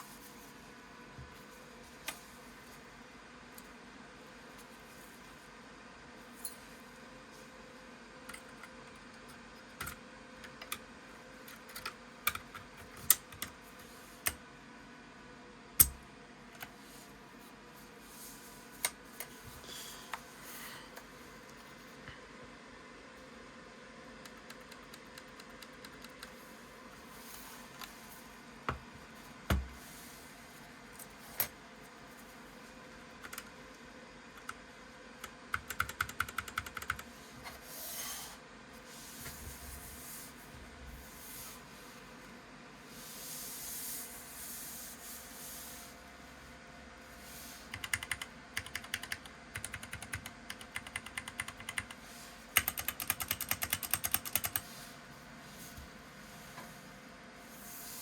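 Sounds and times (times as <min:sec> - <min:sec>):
mechanical keyboard typing: 0:11.6 - 0:13.6, 0:24.2 - 0:26.4, 0:33.2 - 0:33.5, 0:35.2 - 0:37.1, 0:47.7 - 0:52.0, 0:52.6 - 0:54.6.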